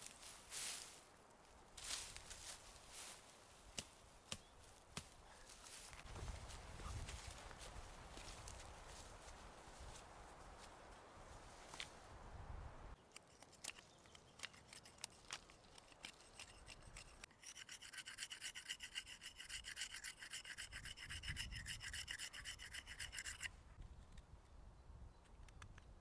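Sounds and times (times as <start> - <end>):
hand saw cutting stick: 13.1 - 23.5.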